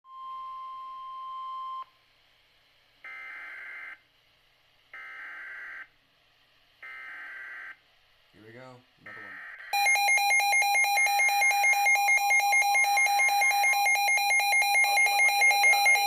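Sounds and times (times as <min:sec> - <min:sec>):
emergency alert warning tone: 0:09.1 - 0:16.0
buzzy digital data tones: 0:11.3 - 0:16.0.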